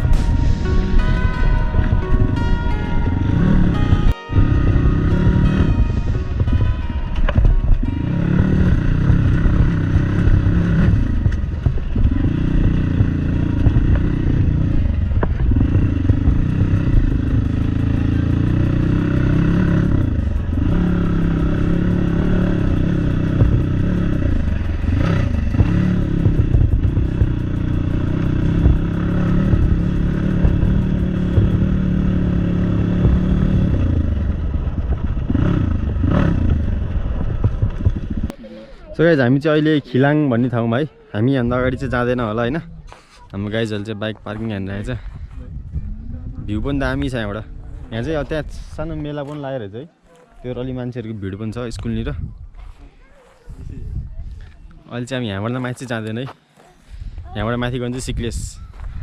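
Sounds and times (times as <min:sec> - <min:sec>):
motorcycle engine revving: 0:00.0 - 0:48.9
clatter over rough ground: 0:00.0 - 0:50.7.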